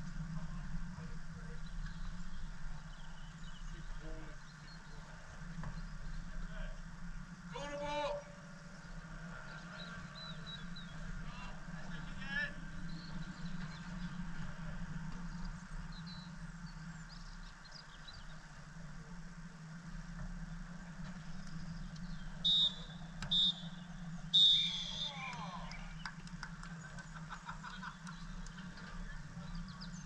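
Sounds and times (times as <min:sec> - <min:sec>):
steady low hum: 0:00.0 - 0:30.0
referee's whistle blasts: 0:22.4 - 0:23.7, 0:24.3 - 0:25.3.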